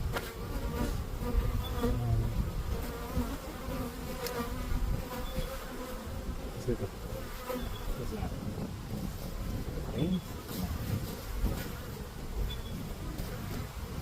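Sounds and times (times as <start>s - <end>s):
honey bees buzzing: 0.0s - 14.0s
low rumble: 1.8s - 2.8s.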